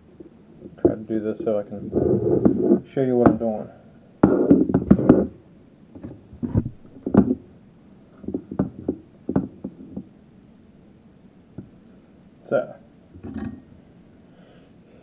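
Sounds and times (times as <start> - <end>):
objects knocking on work surface: 4.2 - 5.3, 6.0 - 7.4, 8.3 - 10.1.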